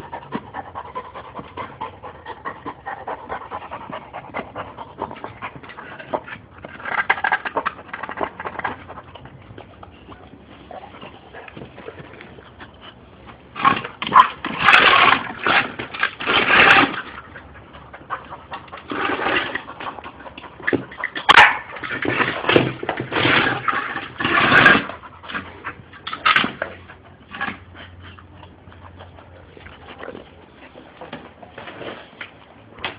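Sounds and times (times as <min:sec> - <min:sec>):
dog panting hard: 0:00.0 - 0:06.5, 0:17.2 - 0:21.2.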